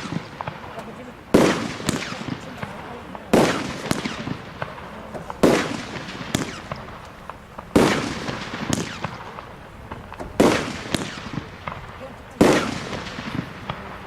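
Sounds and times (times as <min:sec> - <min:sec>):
firework bangs echoing: 0:00.0 - 0:14.0
small firework ticks: 0:00.0 - 0:14.0
softer firework bangs: 0:00.0 - 0:14.0.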